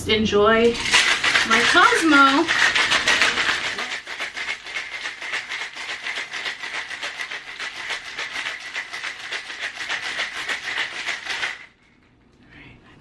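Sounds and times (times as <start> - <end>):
ice rattling in cocktail shaker: 0.7 - 11.8.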